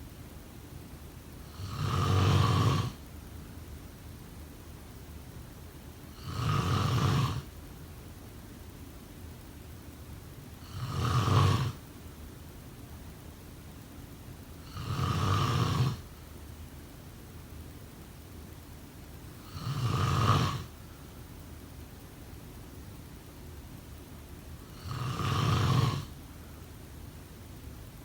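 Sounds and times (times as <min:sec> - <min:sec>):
person snoring: 0:01.5 - 0:03.0, 0:06.2 - 0:07.5, 0:10.6 - 0:11.8, 0:14.6 - 0:16.0, 0:19.4 - 0:20.7, 0:24.7 - 0:26.1.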